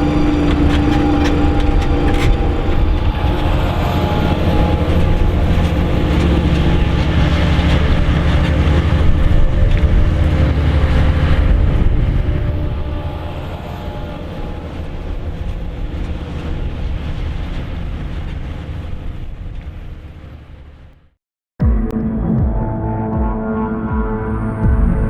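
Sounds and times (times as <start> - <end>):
tractor diesel engine under load: 0.0 - 21.1.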